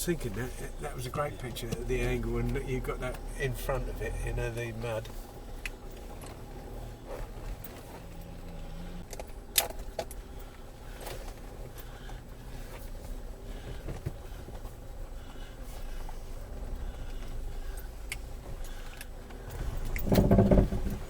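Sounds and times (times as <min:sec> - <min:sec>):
vehicle engine running low: 0:00.0 - 0:21.0
light rattling and clicking: 0:04.5 - 0:21.0.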